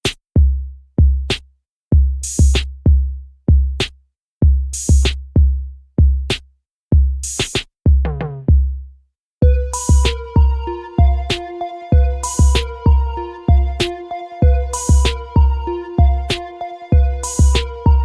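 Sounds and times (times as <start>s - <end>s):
falling pitched sound: 9.5s - 18.0s.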